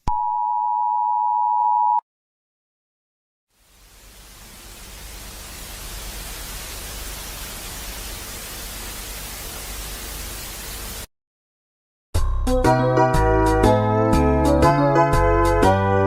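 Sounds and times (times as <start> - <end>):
static hiss: 3.5 - 11.1.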